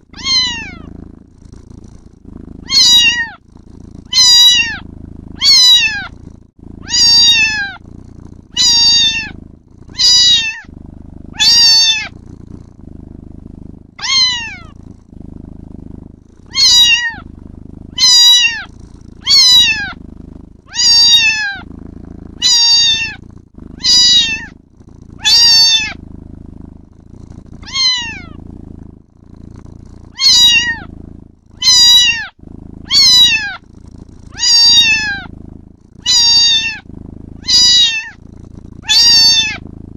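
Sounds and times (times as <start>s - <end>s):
kitten meowing: 0.1s - 0.9s, 2.6s - 3.4s, 4.1s - 4.8s, 5.4s - 6.1s, 6.8s - 7.8s, 8.5s - 10.7s, 11.4s - 12.1s, 14.0s - 14.8s, 16.5s - 17.2s, 17.9s - 20.0s, 20.7s - 21.7s, 22.4s - 23.2s, 23.8s - 24.5s, 25.2s - 26.0s, 27.6s - 28.4s, 30.1s - 30.9s, 31.6s - 33.6s, 34.3s - 35.3s, 36.0s - 38.2s, 38.8s - 39.6s.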